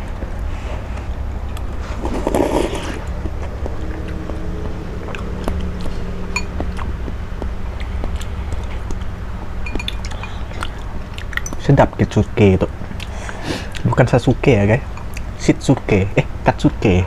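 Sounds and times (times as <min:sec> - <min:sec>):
steady low hum: 0:00.0 - 0:17.0
person slurping noodles: 0:01.8 - 0:03.4
utensils clinking: 0:09.6 - 0:10.7.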